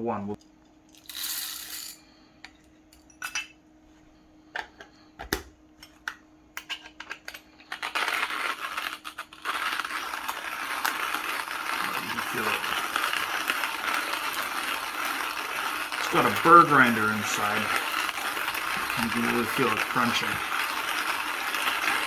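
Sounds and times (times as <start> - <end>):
grinder crunching coffee beans: 0.9 - 2.2, 6.9 - 22.0.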